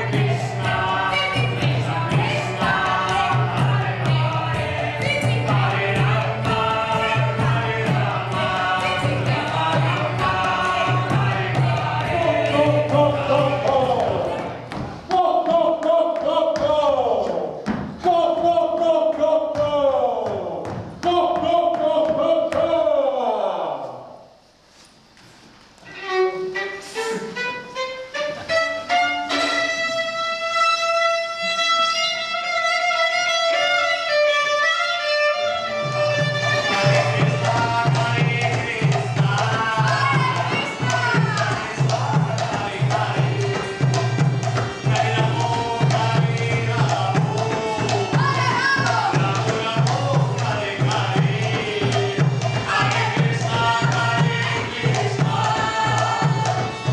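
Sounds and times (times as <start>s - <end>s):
voices singing together: 0.0s - 20.6s, 35.8s - 56.9s
rhythmic percussion: 0.0s - 22.9s, 34.9s - 56.9s
bowed string instrument melody: 25.8s - 37.1s.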